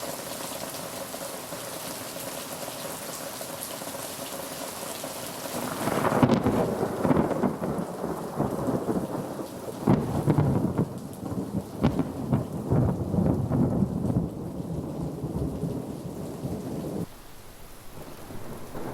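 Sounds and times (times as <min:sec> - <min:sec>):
steady rain hiss: 0:00.0 - 0:18.9
thunder rumble: 0:05.6 - 0:18.9.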